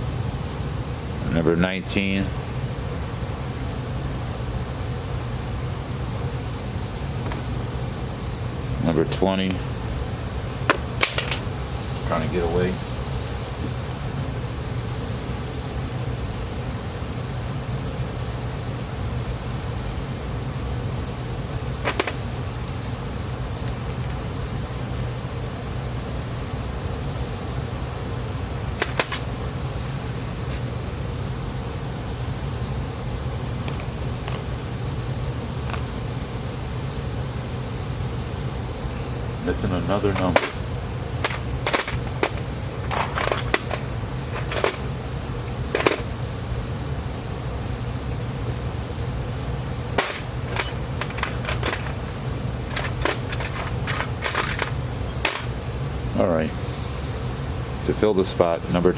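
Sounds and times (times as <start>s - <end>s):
low mechanical hum: 0.0s - 58.9s
small metal parts clicking: 10.7s - 11.5s, 21.8s - 22.2s, 28.8s - 29.3s, 40.2s - 44.9s, 45.7s - 46.1s, 50.0s - 55.6s.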